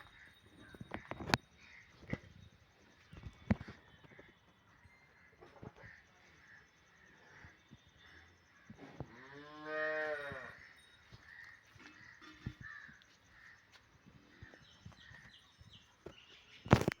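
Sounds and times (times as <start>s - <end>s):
livestock bleating: 9.1s - 10.6s.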